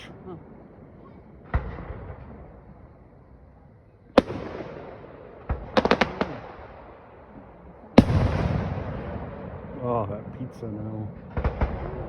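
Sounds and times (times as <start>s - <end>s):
fireworks bangs and cracks: 4.2s - 6.9s, 8.0s - 12.0s.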